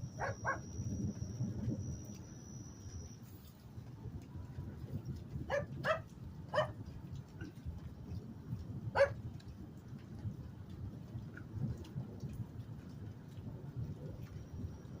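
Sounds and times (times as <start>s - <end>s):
low background rumble: 0.0s - 15.0s
dog barking: 0.2s - 0.7s, 5.5s - 6.8s, 9.0s - 9.2s.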